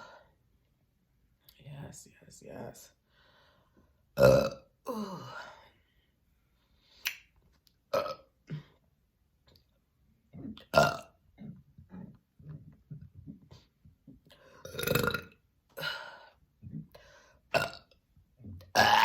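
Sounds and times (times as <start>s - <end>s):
woman burping: 4.2s - 5.6s, 7.9s - 8.8s, 10.4s - 12.1s, 14.6s - 16.2s, 17.5s - 18.0s, 18.6s - 19.0s.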